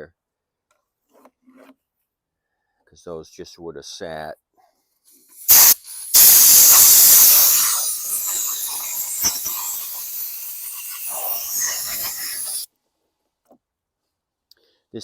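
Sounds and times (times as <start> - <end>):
pressurized spray hissing: 5.4 - 12.7.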